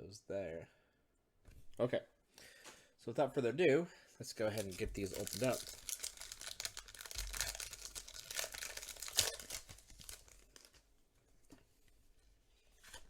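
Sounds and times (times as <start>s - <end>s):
foil pack tearing and crinkling: 4.6s - 10.8s.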